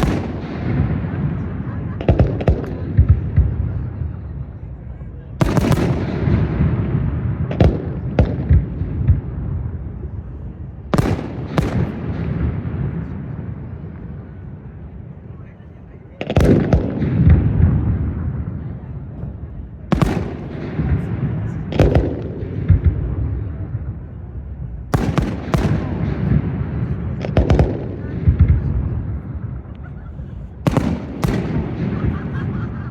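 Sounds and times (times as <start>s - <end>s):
sharp firework bangs: 0.0s - 3.9s, 5.4s - 10.1s, 10.9s - 13.1s, 19.9s - 24.0s, 24.8s - 29.4s, 30.6s - 32.9s
fireworks rumble: 0.0s - 32.9s.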